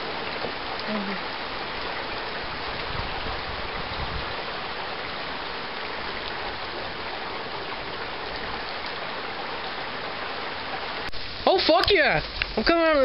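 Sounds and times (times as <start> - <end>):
heavy rain pouring: 0.0 - 13.0.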